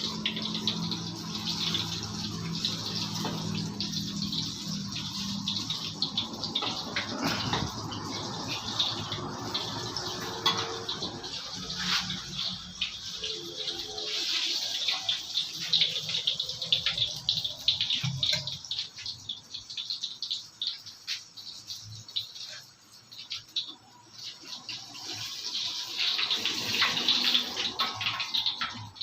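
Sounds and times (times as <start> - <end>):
food deep-frying in hot oil: 0.0 - 29.0.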